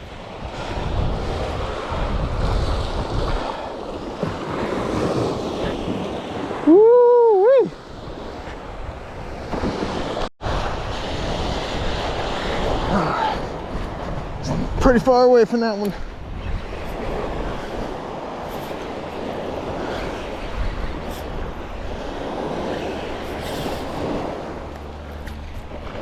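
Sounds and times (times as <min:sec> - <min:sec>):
ocean surf washing in: 0:00.0 - 0:26.0
wind buffeting microphone: 0:00.0 - 0:26.0
man whooping: 0:06.6 - 0:07.8.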